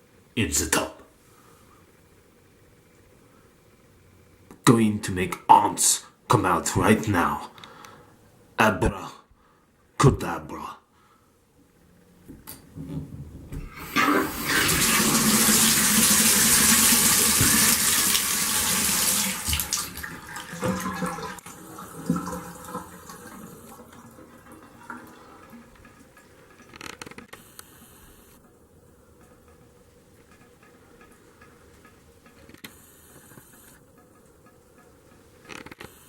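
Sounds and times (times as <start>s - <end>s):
faucet water gushing: 13.6s - 26.6s.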